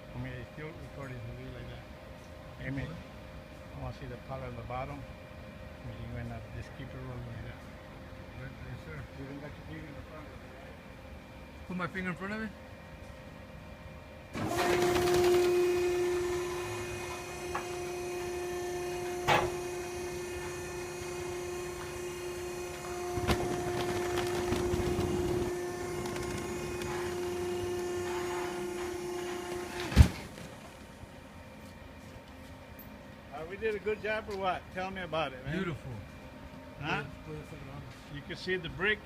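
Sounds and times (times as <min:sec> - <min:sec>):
hydraulic pump whining: 0:14.3 - 0:31.4.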